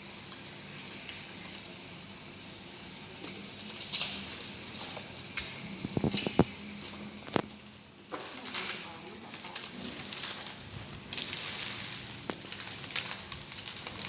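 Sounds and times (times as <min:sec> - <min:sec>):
packaging rustling and crinkling: 0:03.1 - 0:14.0.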